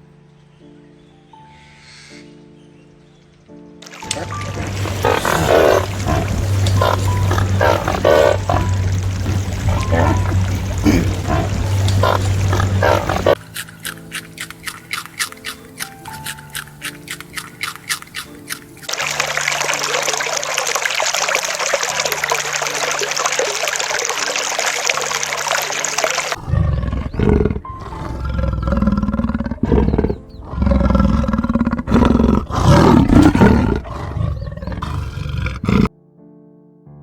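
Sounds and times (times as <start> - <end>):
large animal roaring: 4.1 - 13.4, 26.3 - 35.9.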